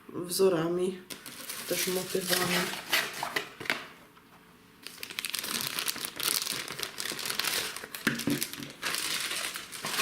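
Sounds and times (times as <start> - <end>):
plastic packaging crinkling: 1.1 - 3.5, 4.8 - 10.0.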